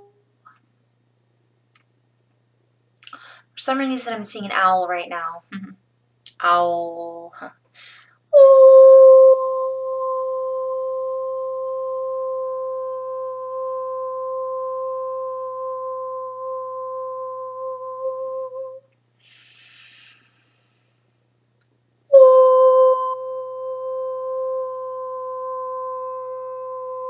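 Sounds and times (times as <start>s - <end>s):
woman humming a high note: 0.0s - 0.2s, 8.4s - 18.9s, 22.1s - 27.0s
soft breath: 19.2s - 21.2s.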